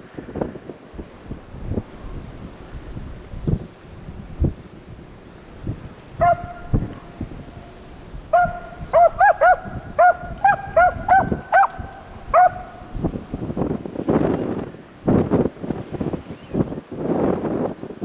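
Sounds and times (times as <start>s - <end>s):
wind on microphone: 0.0s - 18.0s
dogs barking: 6.2s - 13.1s.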